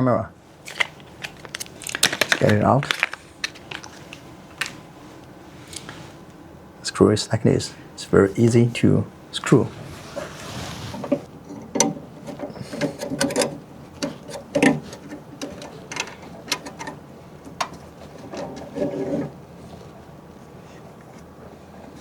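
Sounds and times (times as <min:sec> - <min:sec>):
screw clicks and knocks: 0:11.5 - 0:17.0.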